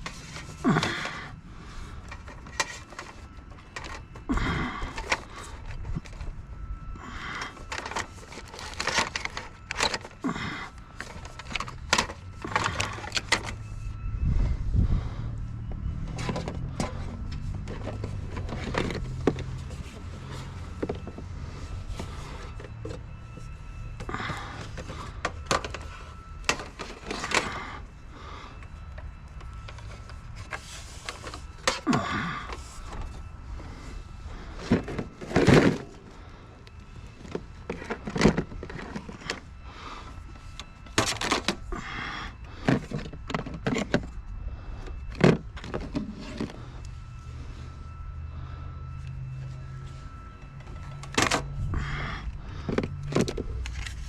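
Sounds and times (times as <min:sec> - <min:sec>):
low steady hum: 0:00.0 - 0:54.0
objects knocking and clattering: 0:37.2 - 0:39.4.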